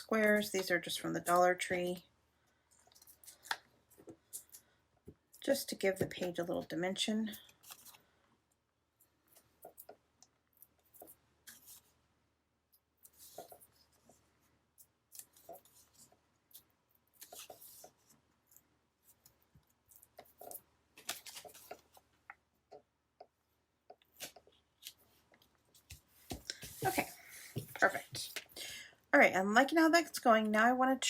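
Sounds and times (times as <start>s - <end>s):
paper rustling: 7.3s - 8.1s, 13.0s - 22.1s.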